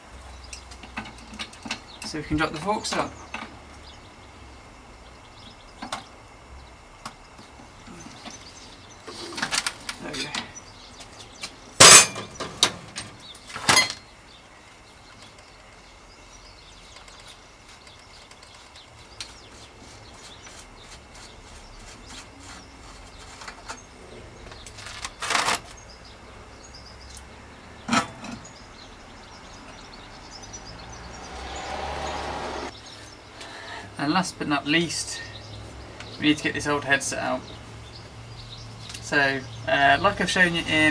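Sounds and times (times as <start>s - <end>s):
small ticks and rattles: 0.2s - 30.8s.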